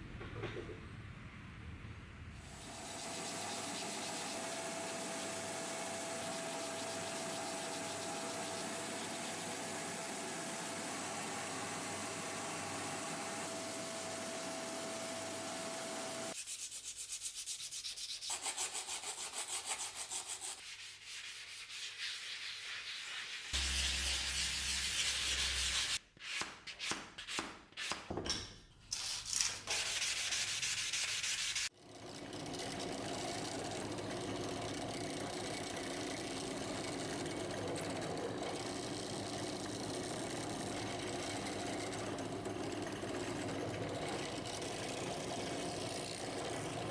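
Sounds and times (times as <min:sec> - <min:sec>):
sanding on a knife: 0:02.4 - 0:10.3, 0:16.3 - 0:26.4, 0:29.0 - 0:31.7.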